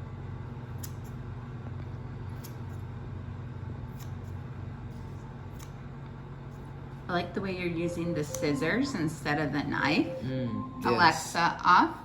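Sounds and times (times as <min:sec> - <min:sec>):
steady low hum: 0:00.0 - 0:12.0
scissors snipping: 0:00.7 - 0:01.2, 0:02.3 - 0:02.8, 0:03.9 - 0:04.4, 0:05.5 - 0:05.8.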